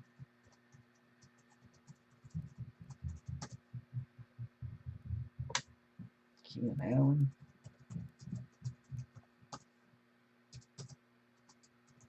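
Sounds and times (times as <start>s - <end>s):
keyboard typing: 0.0s - 3.6s, 7.2s - 9.6s, 10.5s - 12.0s
faint steady hum: 0.0s - 12.0s.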